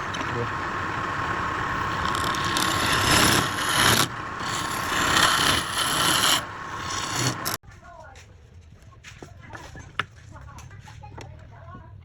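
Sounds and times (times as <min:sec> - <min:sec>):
lathe humming: 0:00.0 - 0:07.6
turning tool cutting wood: 0:00.0 - 0:07.6.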